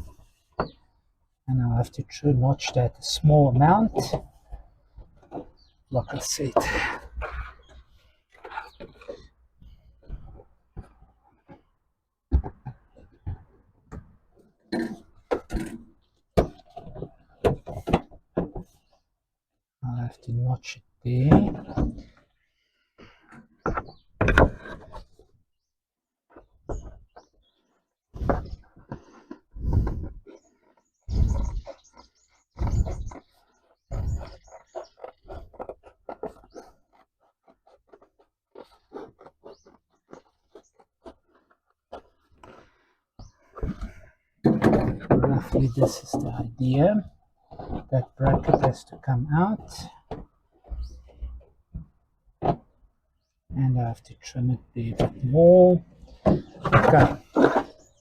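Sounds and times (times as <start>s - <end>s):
cardboard rustling scrapes: 28.4s - 42.8s.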